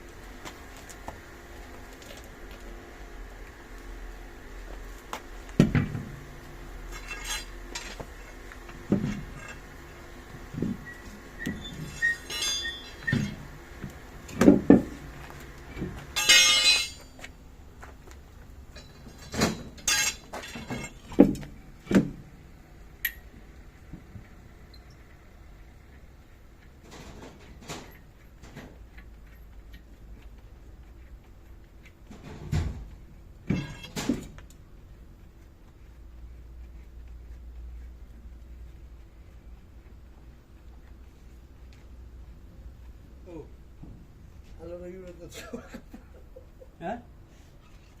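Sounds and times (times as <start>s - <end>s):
metal tools clinking and knocking: 6.9s - 8.0s, 11.6s - 13.4s, 16.2s - 17.2s, 18.7s - 21.2s
short metallic ring: 11.6s - 13.4s, 16.2s - 17.2s, 18.8s - 21.0s.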